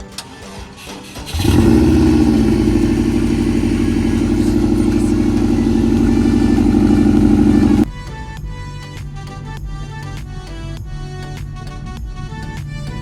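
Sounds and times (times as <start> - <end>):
vehicle engine running steadily: 1.3 - 7.9.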